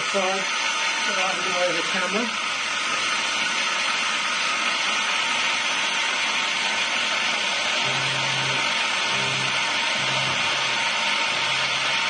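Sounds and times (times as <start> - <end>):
drilling machine motor whine: 0.0 - 12.0
pulsing low hum: 7.8 - 12.0.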